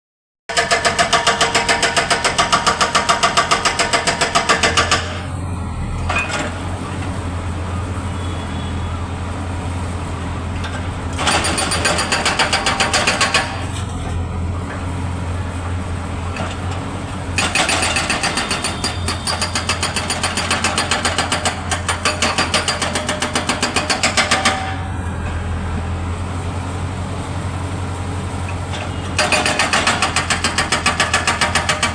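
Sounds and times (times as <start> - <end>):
hydraulic breaker hammer pounding: 0.5 - 5.3, 11.2 - 13.7, 17.3 - 24.9, 28.8 - 31.9
diesel engine running: 4.9 - 19.3, 22.5 - 30.6.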